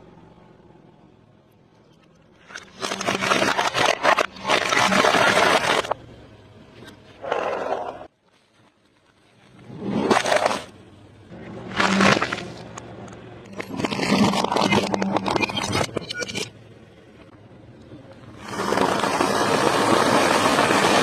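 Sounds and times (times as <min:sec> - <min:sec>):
car tyre crushing objects: 0:06.8 - 0:16.6.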